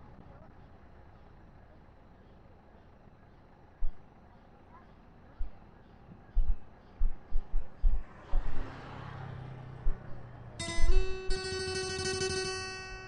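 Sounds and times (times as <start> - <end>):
background music with guitar: 10.6 - 13.0.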